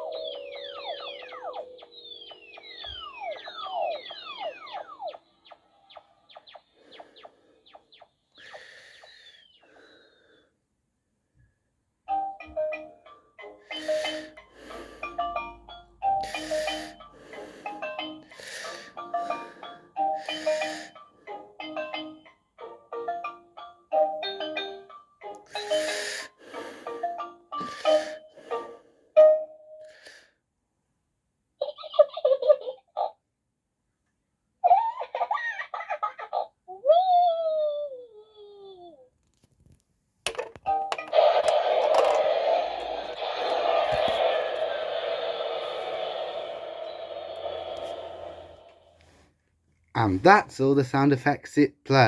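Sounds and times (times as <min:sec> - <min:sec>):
hissy electronic bursts: 0:43.0 - 0:48.6.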